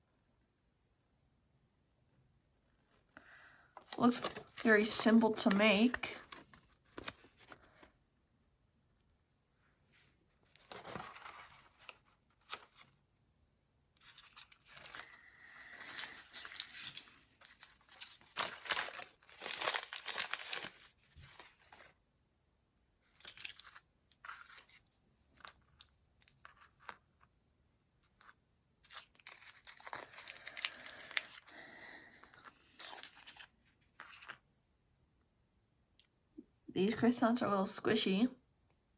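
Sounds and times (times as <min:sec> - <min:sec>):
plastic wrapping tearing and crinkling: 0:14.0 - 0:21.9, 0:23.1 - 0:24.8, 0:28.9 - 0:31.5.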